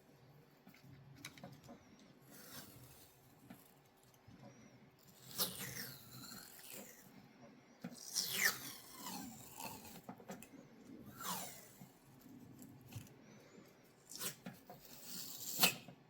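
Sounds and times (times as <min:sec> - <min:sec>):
cloth tape pulled off roll: 0:14.1 - 0:15.9.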